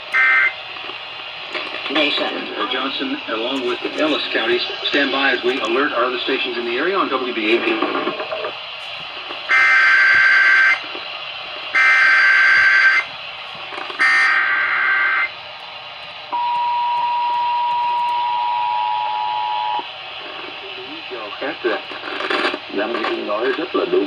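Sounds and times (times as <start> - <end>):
digital data tone bursts: 0.0 - 0.6, 9.5 - 10.9, 11.7 - 13.1, 14.0 - 15.4
two-tone attention signal: 0.2 - 0.6, 11.8 - 13.1, 14.0 - 15.3, 16.4 - 19.8.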